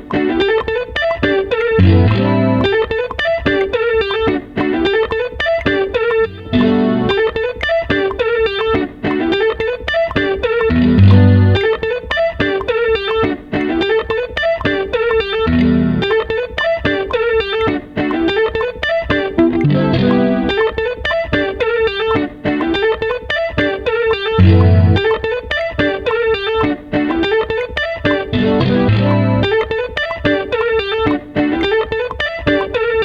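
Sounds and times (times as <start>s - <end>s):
plucked string riff: 0.0s - 33.0s
deep bass notes: 10.7s - 11.6s.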